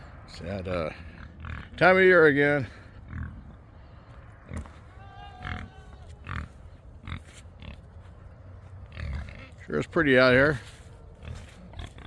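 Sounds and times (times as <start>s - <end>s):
distant farm animal call: 2.6s - 9.9s, 10.6s - 12.0s
footsteps walking: 4.1s - 4.9s, 5.5s - 12.0s.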